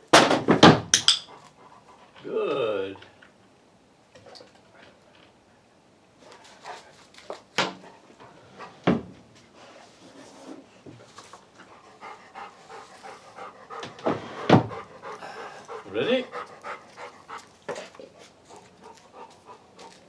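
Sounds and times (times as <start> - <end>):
sharp knocks: 1.0 - 1.3
dog panting: 1.3 - 2.2, 11.3 - 20.0.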